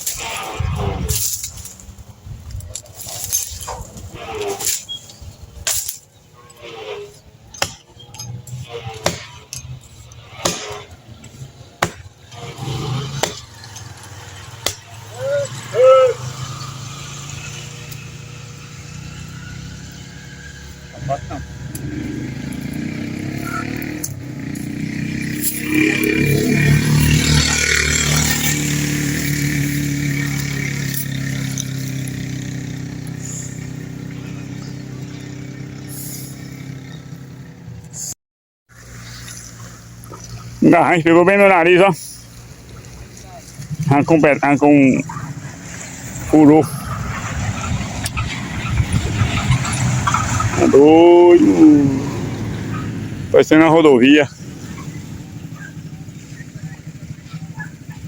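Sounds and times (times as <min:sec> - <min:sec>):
engine droning: 0:00.0 - 0:38.1, 0:38.7 - 0:58.0
wood chopping blows: 0:07.5 - 0:08.0, 0:08.6 - 0:15.2.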